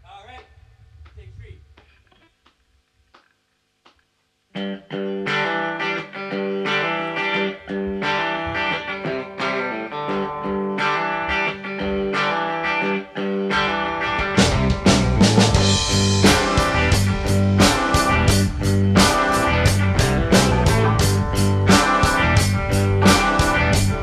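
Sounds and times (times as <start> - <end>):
distorted electric guitar: 4.6 - 24.0
drum kit: 13.6 - 24.0.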